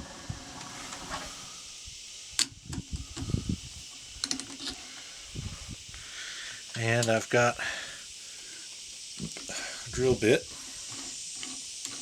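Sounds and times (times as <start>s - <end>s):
tools and wood clicking and knocking: 4.2s - 4.8s, 10.9s - 12.0s.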